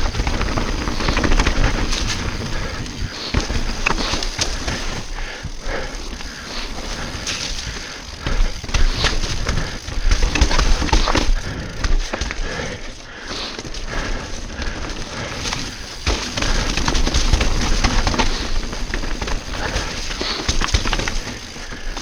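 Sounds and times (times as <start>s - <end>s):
bike clattering and knocking: 0.0s - 22.0s
bike tyre noise: 0.0s - 22.0s.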